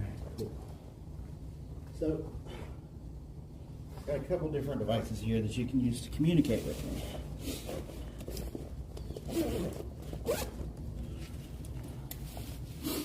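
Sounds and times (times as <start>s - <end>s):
steady low hum: 0.0s - 13.0s
zip being pulled: 9.1s - 10.6s.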